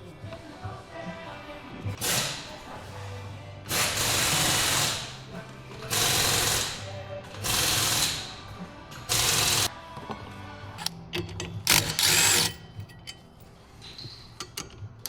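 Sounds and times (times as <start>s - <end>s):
power tool rattling: 9.1s - 9.7s, 11.6s - 12.6s.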